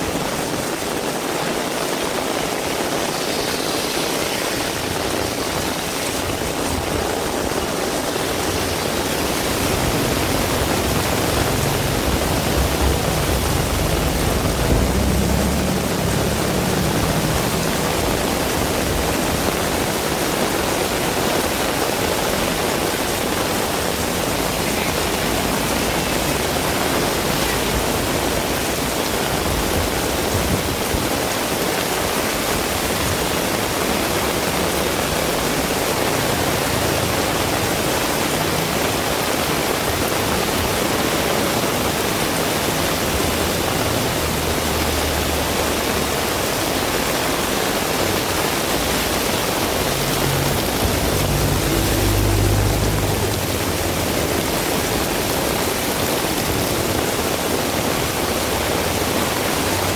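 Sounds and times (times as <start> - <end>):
heavy rain hissing: 0.0 - 59.9
low rumble: 9.0 - 20.7.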